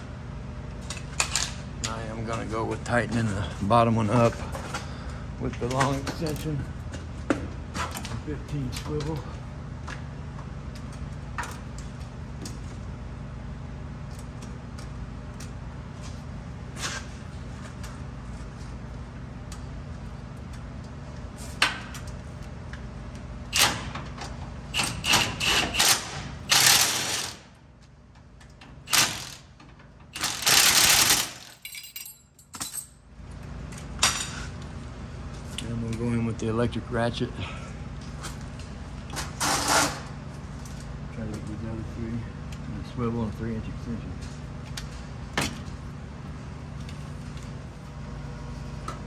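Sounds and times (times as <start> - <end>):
steady low hum: 0.0 - 49.0
metal tools clinking and rattling: 30.2 - 33.0.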